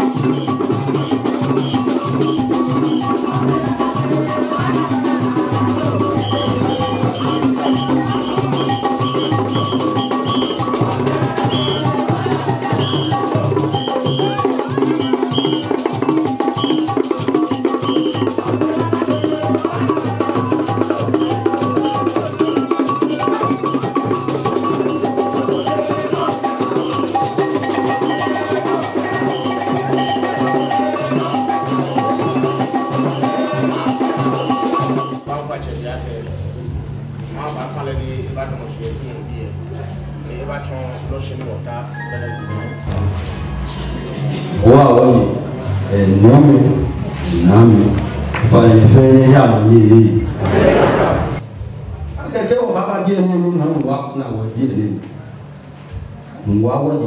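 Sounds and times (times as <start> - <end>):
music with drum beat: 0.0 - 35.9.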